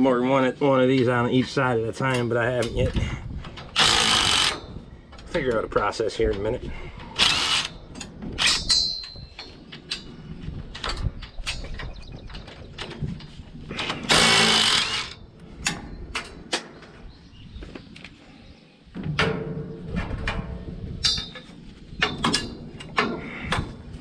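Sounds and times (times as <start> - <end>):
harsh rasping burst: 3.8 - 4.6, 13.8 - 15.2
hand tools clanking on metal: 6.2 - 10.2, 21.0 - 23.6.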